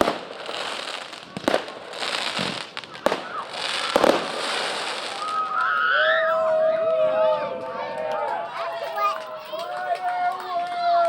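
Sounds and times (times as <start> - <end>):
firework bangs: 0.0 - 5.8
firework crackling: 0.0 - 6.2.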